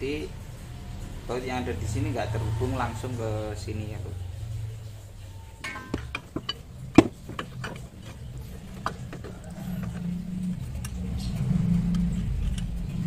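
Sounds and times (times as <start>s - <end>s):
low hum: 1.9s - 13.0s
hand tools clicking on metal: 5.6s - 13.0s.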